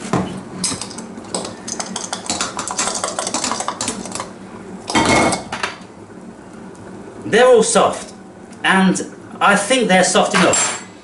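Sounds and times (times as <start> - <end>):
utensil clattering: 0.6 - 4.3.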